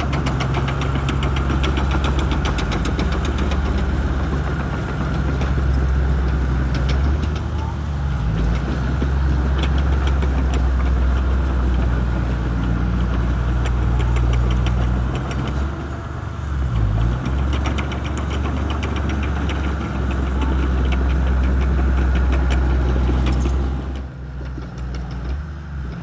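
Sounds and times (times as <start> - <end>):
rapid clicking clatter: 0.0 - 7.6, 16.8 - 25.2
bulldozer diesel engine droning: 0.0 - 26.0.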